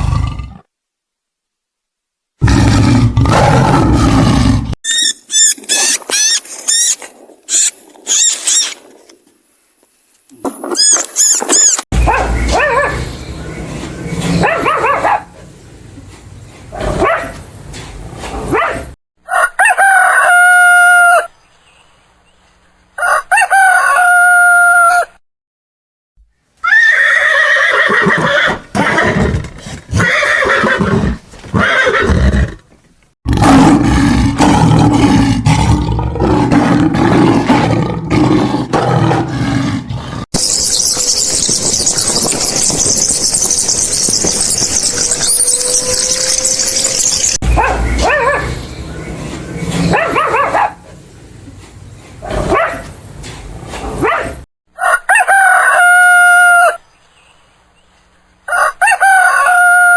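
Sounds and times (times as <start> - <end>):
horses neighing: 26.7 - 32.6.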